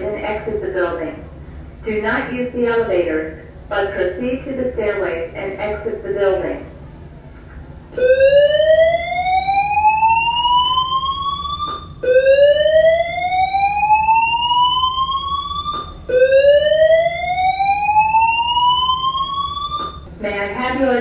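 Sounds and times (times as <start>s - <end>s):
rising whoop alarm tone: 8.0s - 20.0s.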